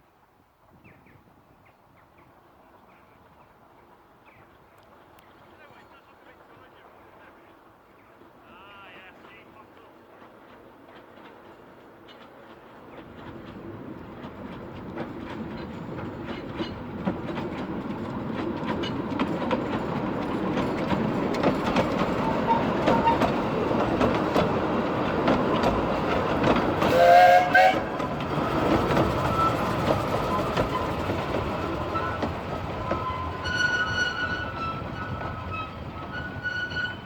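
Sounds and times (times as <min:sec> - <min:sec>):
steam train approaching: 0:02.3 - 0:37.0
train wheels clicking over rail joints: 0:09.2 - 0:37.0
steam whistle: 0:26.8 - 0:28.0.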